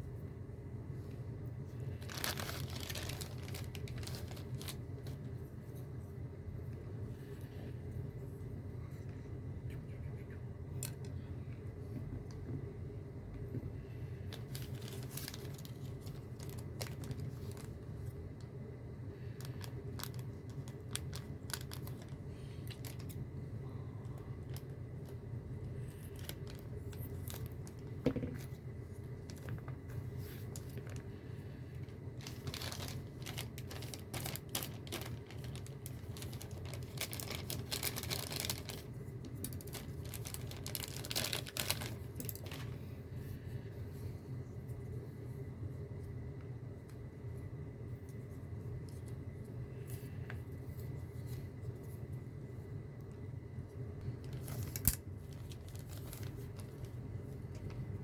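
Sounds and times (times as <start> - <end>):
steady low hum: 0.0 - 58.0
packaging crinkling: 1.8 - 5.4, 14.3 - 18.2, 19.1 - 23.4, 24.1 - 42.9, 54.1 - 58.0.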